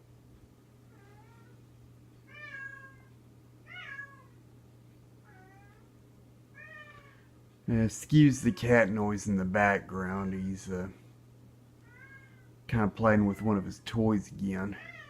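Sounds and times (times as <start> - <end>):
steady low hum: 0.0 - 15.0
cat meowing: 2.3 - 3.1, 3.7 - 4.4, 5.2 - 5.9, 6.6 - 7.3, 14.8 - 15.0.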